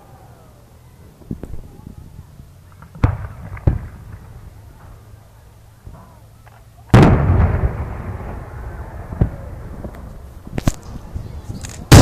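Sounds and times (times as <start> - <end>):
firework sharp cracks: 2.7 - 4.5, 6.9 - 11.0, 11.8 - 12.0
firework boom and rumble: 2.8 - 4.8, 6.9 - 11.2.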